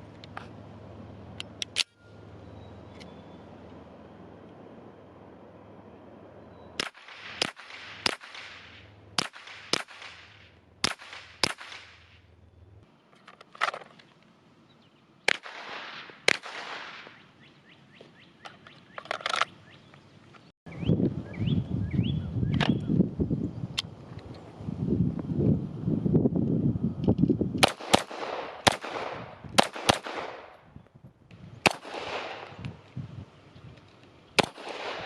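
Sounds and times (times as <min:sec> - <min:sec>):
pistol shots with echo: 0:06.8 - 0:12.2, 0:15.3 - 0:17.2, 0:27.6 - 0:30.6, 0:31.6 - 0:32.6, 0:34.4 - 0:35.0.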